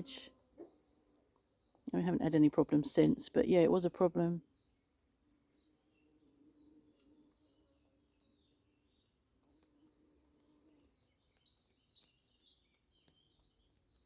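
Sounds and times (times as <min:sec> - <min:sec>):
faint bird chirps: 0:10.2 - 0:14.0.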